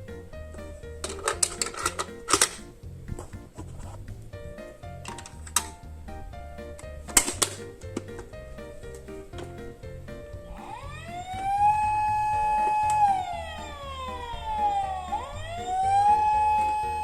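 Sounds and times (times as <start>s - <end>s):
background music with steady beat: 0.0s - 17.0s
emergency vehicle siren wailing: 10.6s - 17.0s.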